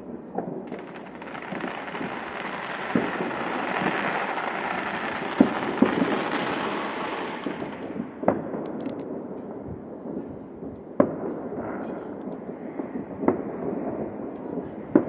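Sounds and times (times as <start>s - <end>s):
fireworks bangs: 0.0s - 8.7s
fireworks crackling: 0.0s - 8.8s.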